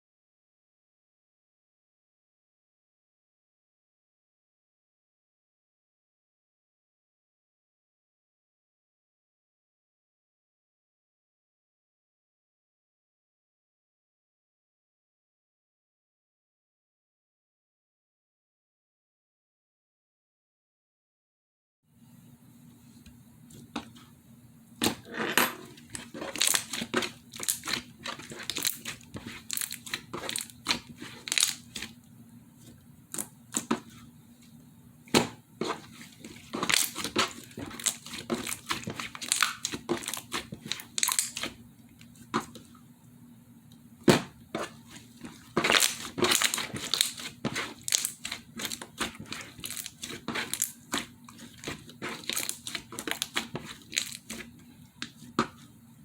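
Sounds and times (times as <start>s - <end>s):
slime squeezed crackling and popping: 26.1s - 31.8s.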